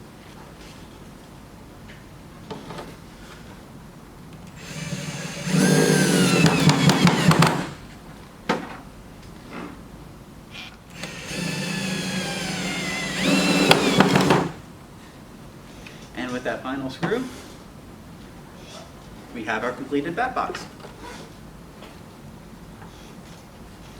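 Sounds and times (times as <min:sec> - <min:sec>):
power drill driving screws: 0:04.6 - 0:07.8, 0:11.0 - 0:14.6.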